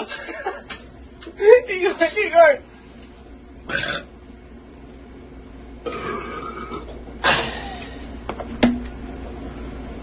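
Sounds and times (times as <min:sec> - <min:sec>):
girl burping: 0:03.7 - 0:04.1, 0:05.8 - 0:07.5.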